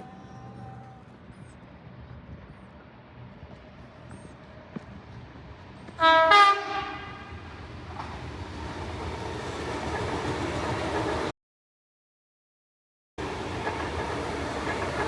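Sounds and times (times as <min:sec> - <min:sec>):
train rumble and rail noise: 0:00.0 - 0:11.3, 0:13.2 - 0:15.0
train horn two-note blast: 0:06.0 - 0:07.4.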